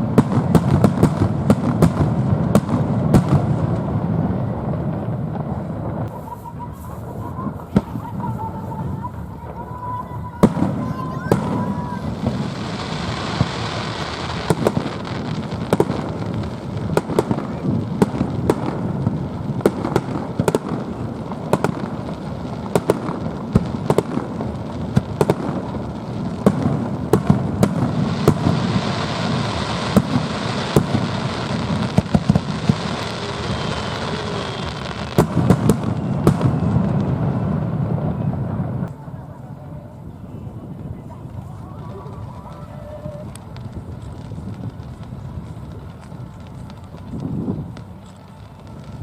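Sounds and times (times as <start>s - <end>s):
fireworks bangs: 0.0s - 49.0s
fireworks crackle and rumble: 0.0s - 49.0s.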